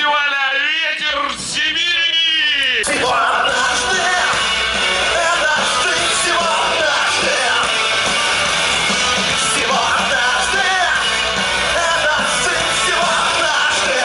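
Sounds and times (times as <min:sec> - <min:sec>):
live rock band playing: 0:02.8 - 0:14.0
person singing: 0:02.9 - 0:07.8, 0:09.4 - 0:14.0.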